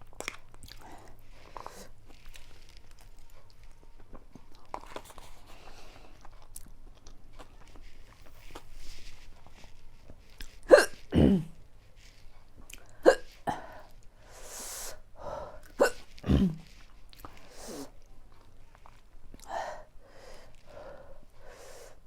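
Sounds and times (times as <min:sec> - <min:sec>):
woman hiccuping: 0:10.7 - 0:11.6, 0:13.0 - 0:13.6, 0:15.8 - 0:16.6
breath: 0:13.5 - 0:15.7, 0:19.4 - 0:22.0.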